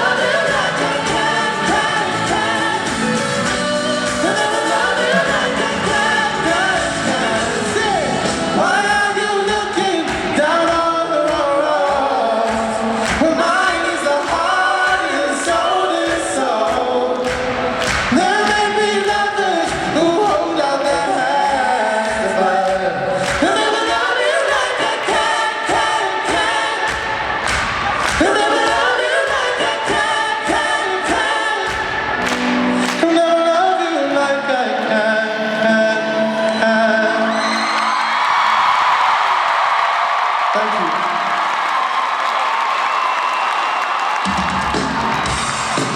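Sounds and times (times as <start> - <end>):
live pop-soul band: 0.0 - 38.2
voices singing together: 0.0 - 39.9.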